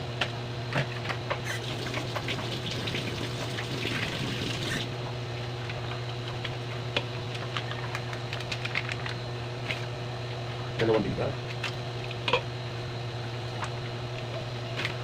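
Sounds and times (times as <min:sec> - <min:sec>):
steady low hum: 0:00.0 - 0:15.0
vinegar pouring: 0:01.5 - 0:04.9.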